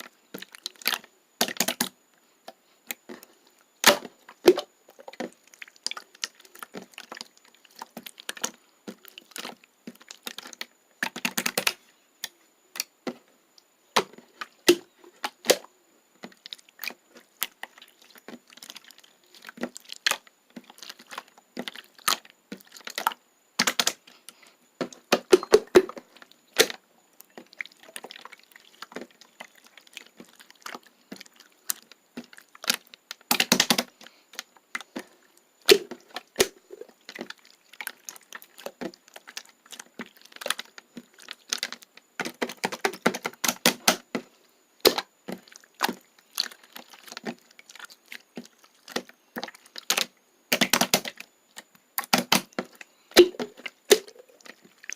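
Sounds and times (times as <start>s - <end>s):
slime squishing: 0.0s - 13.2s, 13.9s - 54.9s.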